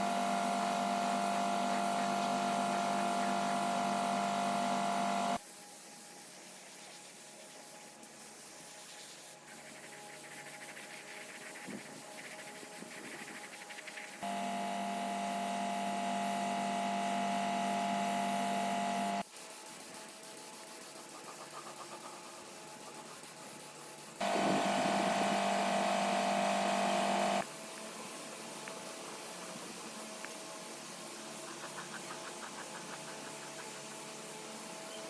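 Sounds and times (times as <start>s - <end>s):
small electric tool humming: 0.0s - 5.4s, 14.2s - 19.2s, 24.2s - 27.5s.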